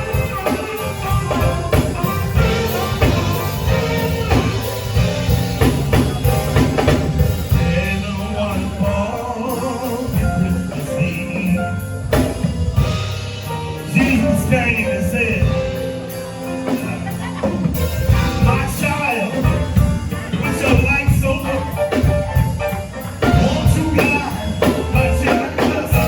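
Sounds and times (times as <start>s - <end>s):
live band playing gospel song: 0.0s - 26.0s
person singing: 6.0s - 12.2s, 13.7s - 26.0s.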